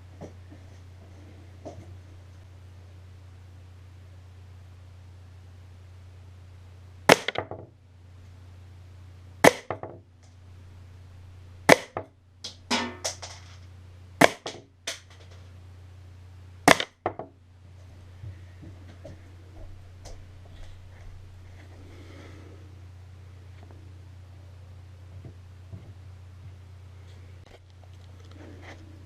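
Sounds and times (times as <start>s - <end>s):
pellet rattling on hard disk: 11.9s - 15.5s
air pistol sharp crack: 16.7s - 17.0s.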